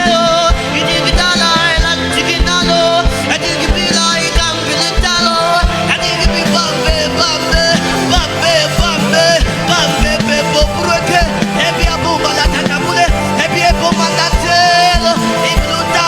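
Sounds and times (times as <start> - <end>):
gospel worship music: 0.0 - 16.0.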